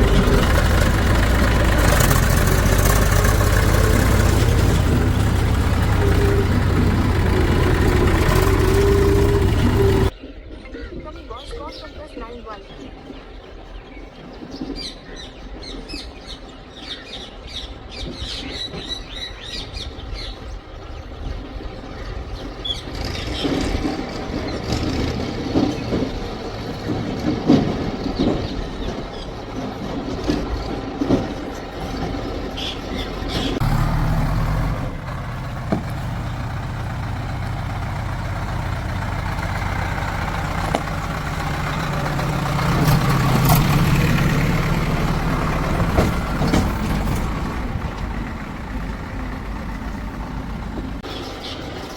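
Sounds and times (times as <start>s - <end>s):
diesel engines running: 0.0s - 10.2s, 15.1s - 51.9s
birds chirping: 0.0s - 51.9s
knocks: 35.4s - 36.5s.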